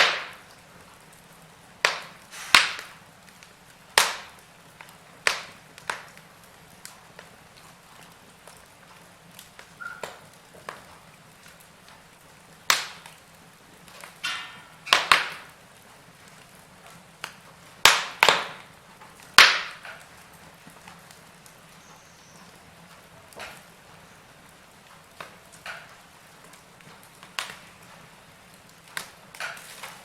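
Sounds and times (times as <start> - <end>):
loud sharp pops from logs: 0.0 - 0.6, 1.8 - 7.3, 9.4 - 12.0, 12.6 - 13.3, 13.9 - 15.6, 16.3 - 21.6, 23.3 - 23.8, 25.1 - 30.0
low steady hiss: 0.0 - 30.0
wood fire crackling: 0.0 - 30.0.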